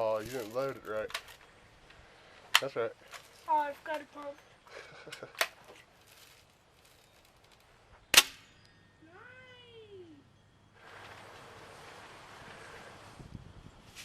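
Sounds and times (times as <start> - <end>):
air gun firing: 8.1 - 8.4.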